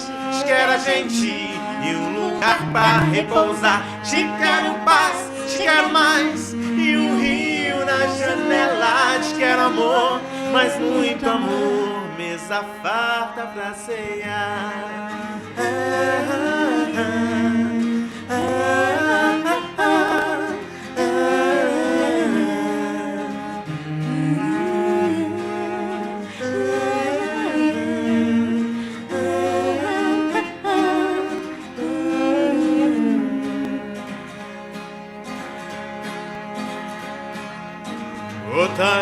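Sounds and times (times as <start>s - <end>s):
person humming a melody: 0.0s - 11.9s, 15.6s - 34.0s
acoustic accompaniment: 0.0s - 39.0s.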